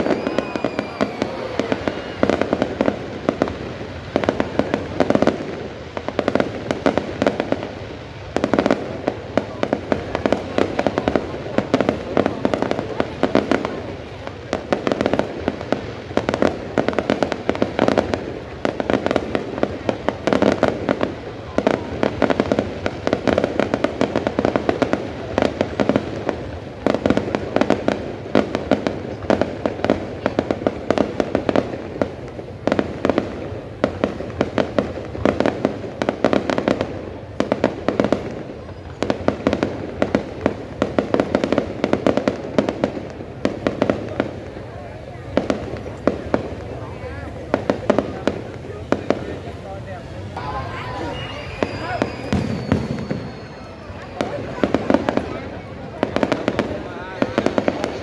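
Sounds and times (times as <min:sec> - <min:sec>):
fireworks bangs and crackling: 0:00.0 - 0:58.0.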